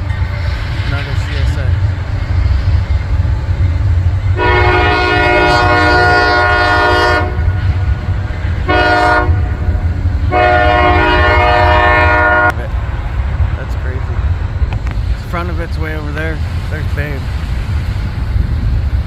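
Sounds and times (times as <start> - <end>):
low rumble of passing train: 0.0 - 19.0
train air horn blasts: 4.4 - 7.7, 8.6 - 12.6.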